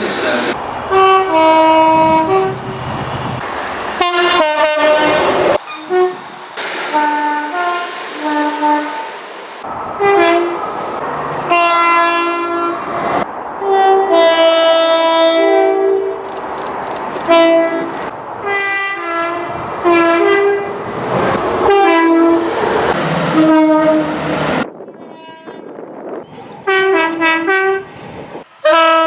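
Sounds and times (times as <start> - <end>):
rumbling of moving trains: 0.0 - 29.0
train horn blasts: 0.9 - 2.6, 4.0 - 6.3, 6.9 - 9.1, 9.9 - 10.6, 11.5 - 12.8, 13.6 - 16.2, 17.2 - 20.7, 23.3 - 24.4, 26.6 - 28.0, 28.6 - 29.0.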